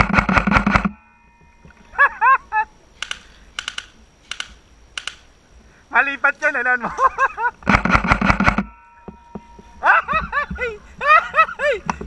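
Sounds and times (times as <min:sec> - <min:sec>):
airsoft guns firing: 0:00.0 - 0:01.0, 0:03.0 - 0:05.4, 0:07.6 - 0:08.7.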